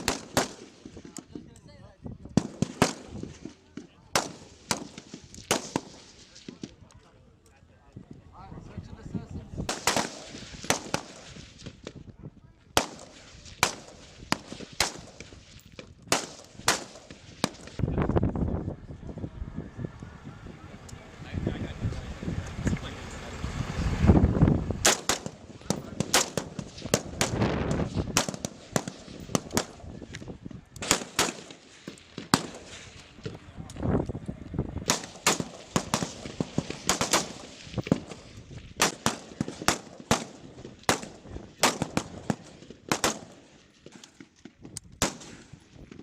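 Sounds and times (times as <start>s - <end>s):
rifle shots: 0.0s - 1.2s, 2.4s - 6.7s, 9.6s - 12.0s, 12.7s - 15.4s, 16.1s - 17.8s, 24.8s - 30.0s, 30.8s - 33.0s, 34.8s - 44.2s, 45.0s - 45.6s.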